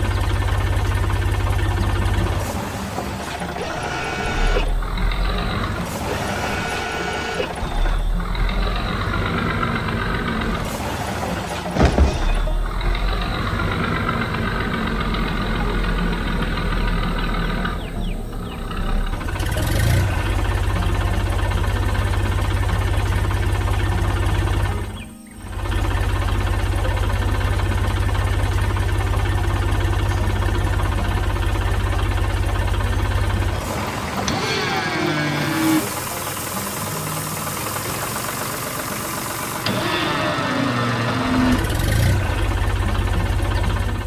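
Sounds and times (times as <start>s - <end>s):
background music: 0.0s - 44.0s
diesel engine running: 0.0s - 44.0s
loud clunk: 9.7s - 14.8s.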